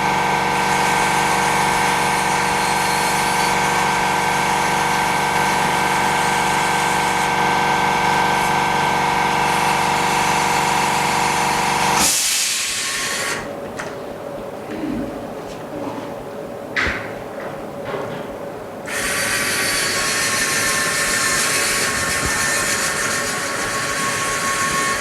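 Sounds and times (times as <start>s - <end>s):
small electric motor humming: 18.9s - 25.0s.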